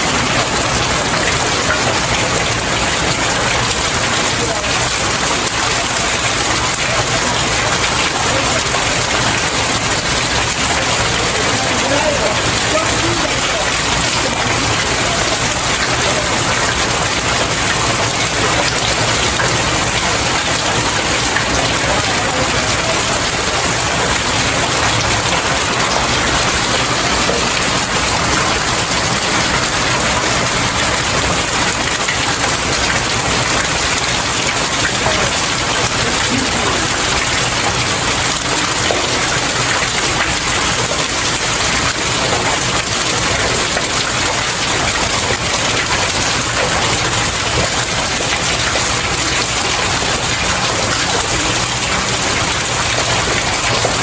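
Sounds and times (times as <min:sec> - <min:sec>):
rain pattering on stairs: 0:00.0 - 0:54.0.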